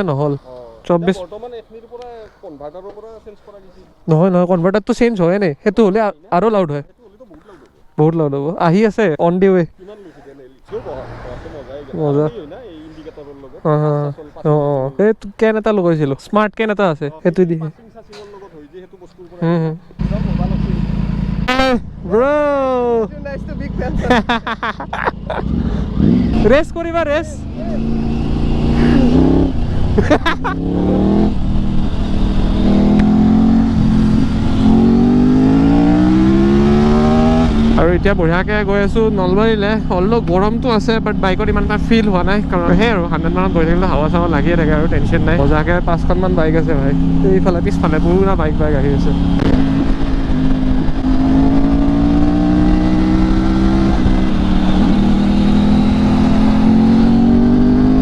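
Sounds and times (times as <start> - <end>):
motorcycle engine accelerating: 10.7 - 14.7, 18.7 - 58.0
wind rushing over microphone: 40.5 - 58.0.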